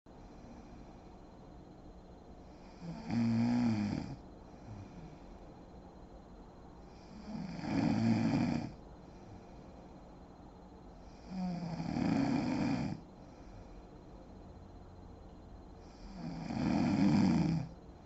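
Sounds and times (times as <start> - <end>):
woman snoring: 2.5 - 5.1, 6.9 - 8.8, 11.0 - 13.0, 15.8 - 17.8.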